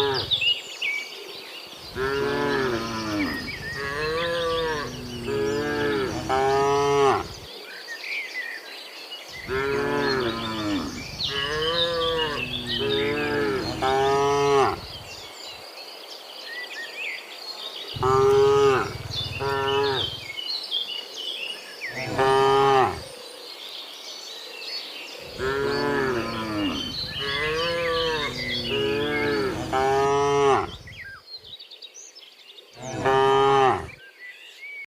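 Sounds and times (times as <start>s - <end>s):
cows mooing: 0.0s - 0.4s, 1.9s - 7.5s, 9.4s - 15.0s, 18.0s - 20.3s, 21.9s - 23.1s, 25.3s - 31.0s, 32.8s - 34.0s.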